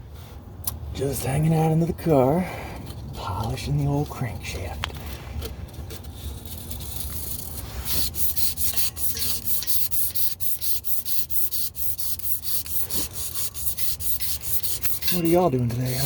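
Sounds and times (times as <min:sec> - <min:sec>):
abrasive rubbing on metal: 0:06.1 - 0:16.0.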